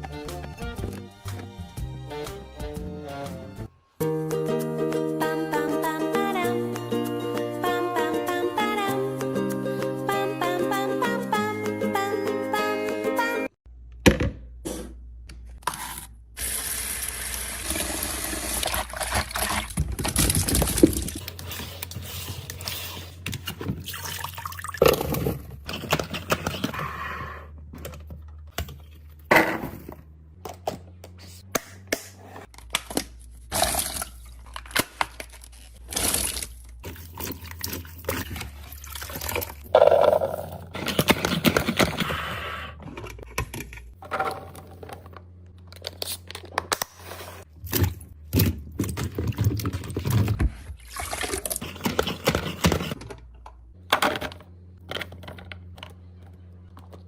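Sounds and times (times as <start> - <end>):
water pouring: 23.8 - 25.0, 50.8 - 51.6.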